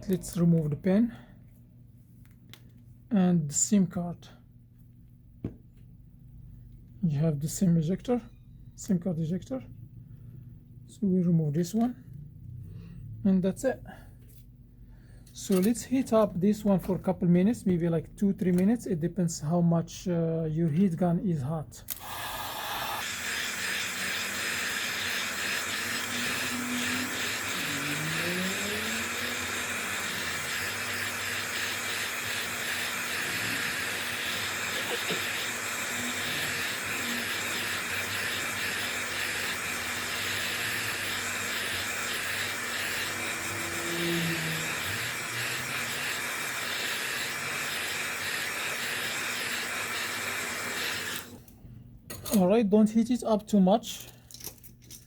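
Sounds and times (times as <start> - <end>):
heat gun blowing hot air: 21.9 - 51.4.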